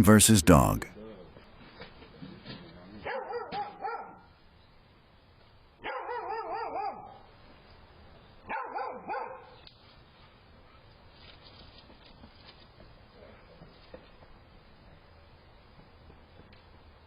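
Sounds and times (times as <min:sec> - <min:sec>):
dog barking: 0:03.0 - 0:04.3, 0:05.8 - 0:07.2, 0:08.5 - 0:09.6.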